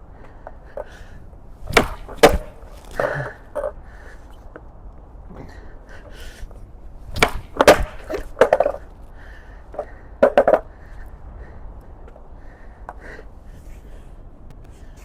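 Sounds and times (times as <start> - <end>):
skateboard knocks and landings: 1.6 - 3.8, 7.1 - 8.9, 10.2 - 10.7.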